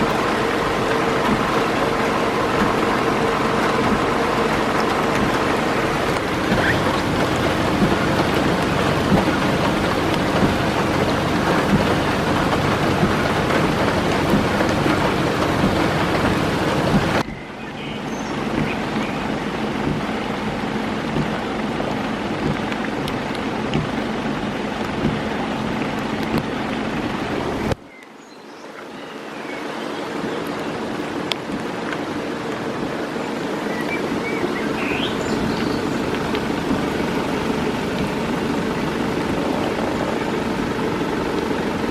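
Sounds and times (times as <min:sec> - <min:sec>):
birds chirping: 0:00.0 - 0:24.8, 0:33.2 - 0:41.6
vehicle engine humming: 0:00.0 - 0:27.9, 0:30.1 - 0:41.9
floodwater rushing: 0:00.0 - 0:41.9
torrential rain pouring: 0:00.0 - 0:41.9.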